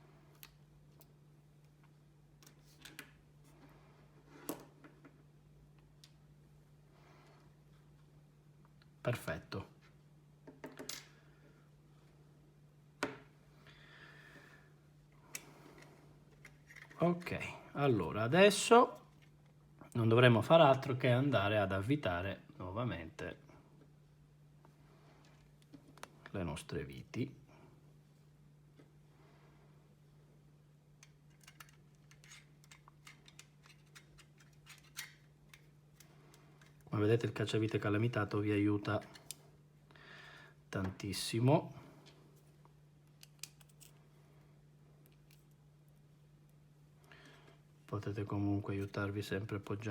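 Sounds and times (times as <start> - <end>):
low electrical hum: 0.0 - 49.9
metal rails and screws clicking: 31.3 - 35.2.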